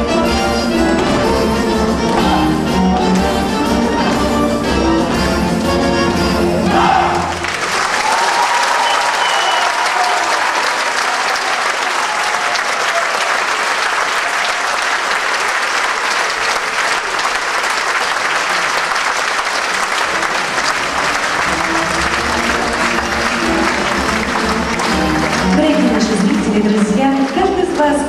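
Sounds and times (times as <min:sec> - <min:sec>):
music: 0:00.0 - 0:07.8, 0:19.0 - 0:28.0
audience applauding: 0:06.8 - 0:28.0.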